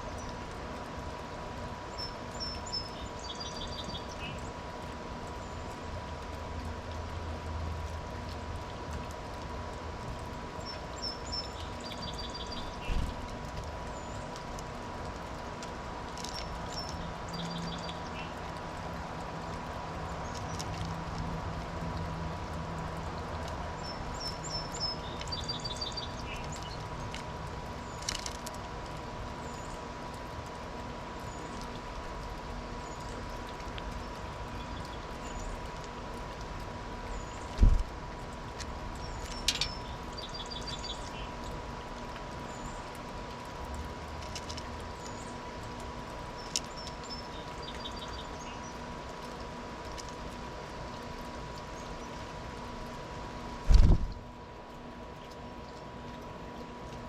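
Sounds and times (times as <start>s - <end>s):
small birds chirping: 1.8s - 5.9s, 10.2s - 20.9s, 23.2s - 53.1s.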